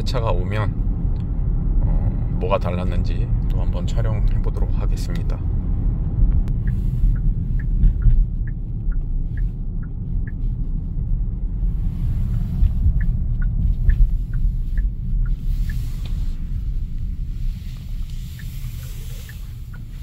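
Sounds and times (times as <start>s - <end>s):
road and engine rumble: 0.0s - 20.0s
turn-signal indicator ticking: 6.3s - 11.1s, 12.3s - 20.0s.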